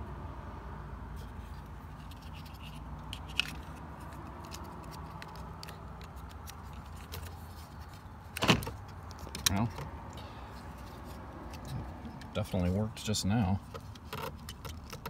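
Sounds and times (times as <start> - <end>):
plastic clicks and scrapes: 1.2 - 9.9, 13.6 - 15.0.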